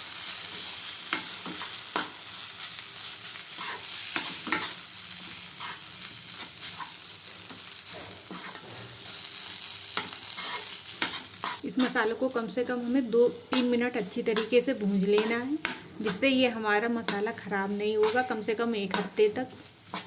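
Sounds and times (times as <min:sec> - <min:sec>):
paste sizzling in oil: 0:00.0 - 0:20.0
utensil scraping a pan: 0:03.6 - 0:04.8, 0:05.5 - 0:12.0, 0:18.9 - 0:20.0.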